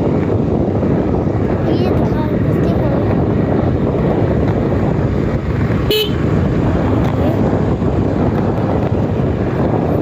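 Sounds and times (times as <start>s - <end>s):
wind rumble on microphone: 0.0s - 10.0s
vehicle horn toot: 5.9s - 6.3s.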